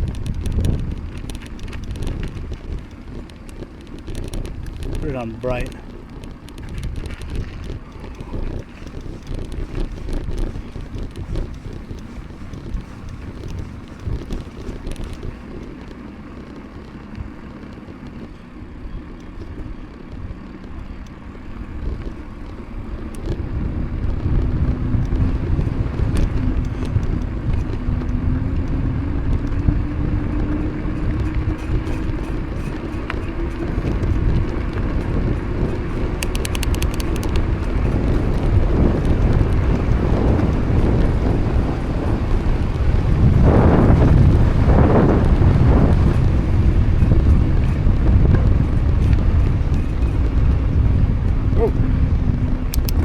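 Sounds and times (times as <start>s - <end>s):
wind buffeting microphone: 0.0s - 53.0s
fast ticking: 29.5s - 41.2s.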